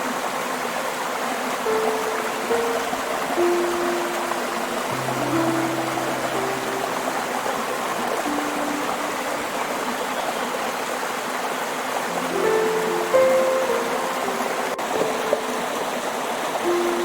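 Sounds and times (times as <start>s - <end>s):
stream water flowing: 0.0s - 17.0s
soft held music notes: 1.7s - 10.1s, 12.1s - 17.0s.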